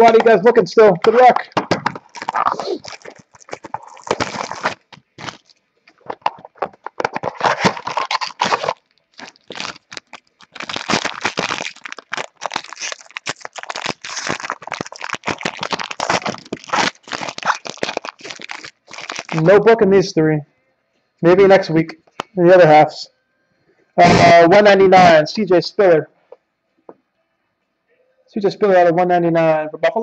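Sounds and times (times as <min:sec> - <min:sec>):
packaging crinkling: 0:01.4 - 0:19.5.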